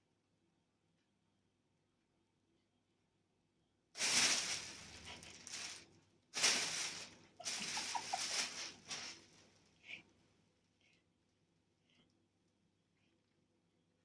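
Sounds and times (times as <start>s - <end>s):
plastic bag crinkling: 4.0s - 9.6s.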